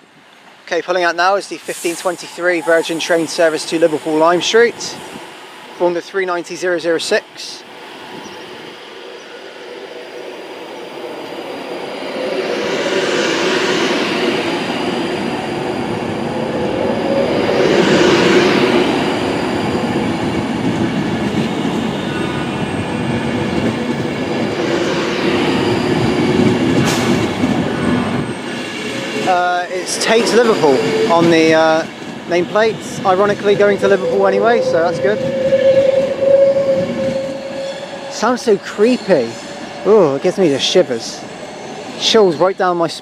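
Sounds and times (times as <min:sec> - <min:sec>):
train wheels rumbling on rail: 0:01.2 - 0:42.4.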